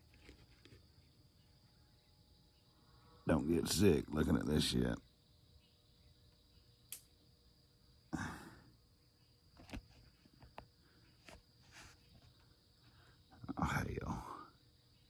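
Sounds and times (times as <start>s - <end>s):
faint sharp clicks: 6.9s - 7.1s.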